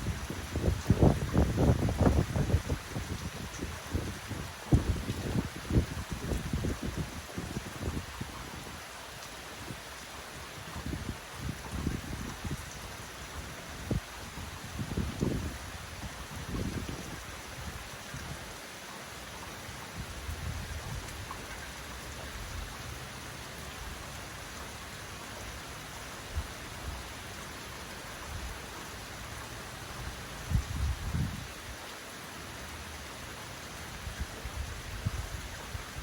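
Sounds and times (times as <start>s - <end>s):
strong wind gusting: 0.0s - 8.8s, 13.7s - 18.3s, 30.5s - 31.5s
heavy rain pouring: 0.0s - 36.0s.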